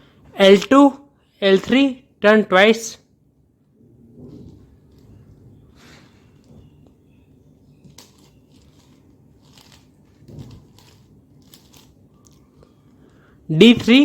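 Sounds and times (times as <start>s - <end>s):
puzzle cube clicking and scraping: 7.9s - 12.7s.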